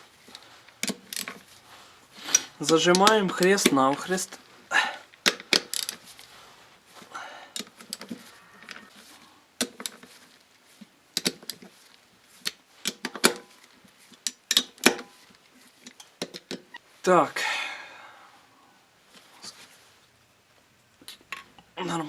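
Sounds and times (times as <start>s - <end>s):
hand tools clicking on metal: 0.3s - 1.4s, 2.2s - 4.4s, 5.1s - 6.3s, 7.5s - 8.9s, 14.1s - 16.8s.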